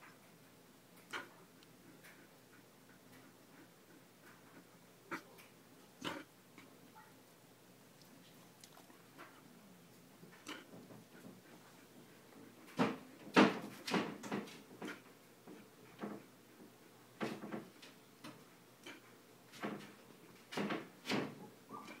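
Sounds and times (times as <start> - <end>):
pet's laboured breathing: 1.0 - 5.4.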